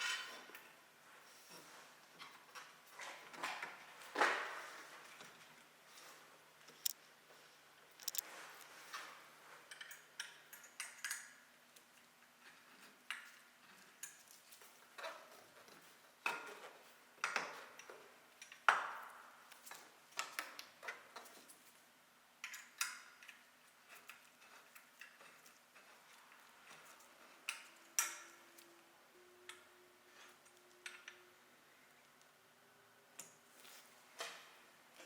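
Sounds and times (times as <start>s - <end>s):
metallic clicks and knocks: 8.0s - 8.2s.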